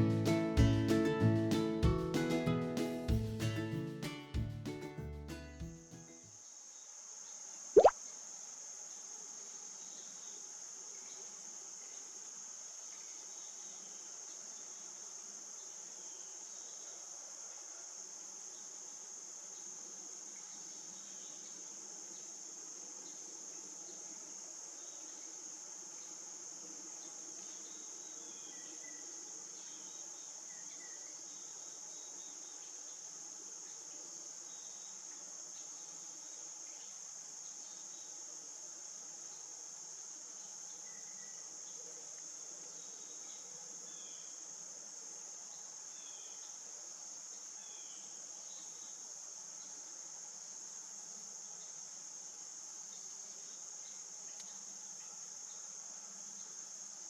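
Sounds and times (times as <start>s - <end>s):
high-pitched insect chorus: 5.6s - 57.0s.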